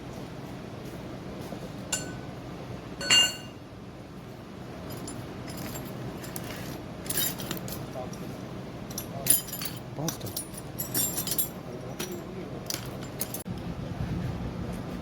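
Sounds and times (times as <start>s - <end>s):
metal pieces clinking: 3.0s - 3.6s, 8.9s - 13.4s.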